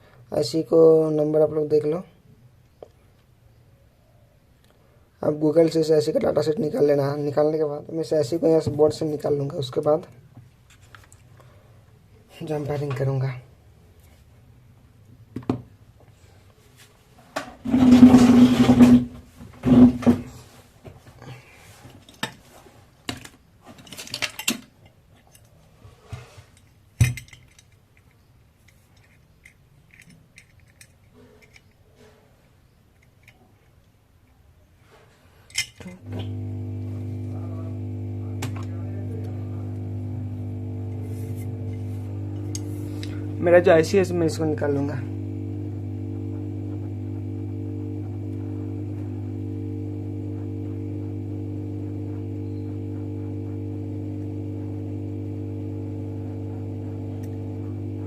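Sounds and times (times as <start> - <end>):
hot-air blower humming: 36.0 - 58.0
small motor whirring: 36.1 - 43.8, 44.6 - 58.0.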